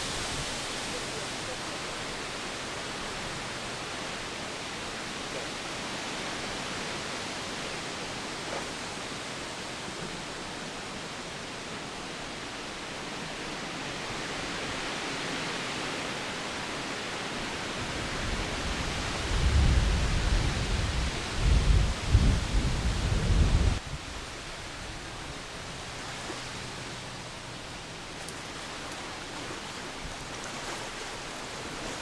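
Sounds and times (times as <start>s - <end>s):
wind buffeting microphone: 17.7s - 25.5s.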